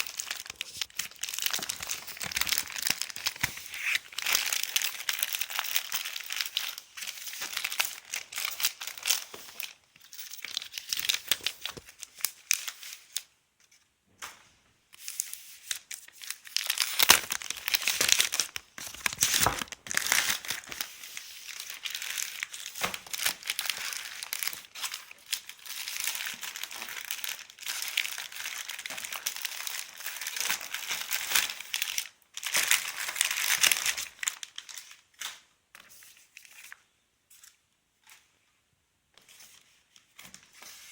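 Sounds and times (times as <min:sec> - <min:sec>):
plastic wrapping crinkling and tearing: 0:00.0 - 0:13.3, 0:15.0 - 0:36.8.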